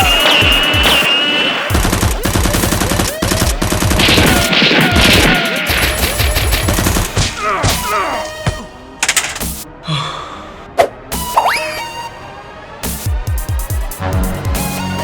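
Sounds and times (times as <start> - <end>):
automatic gunfire: 0.0 - 7.2.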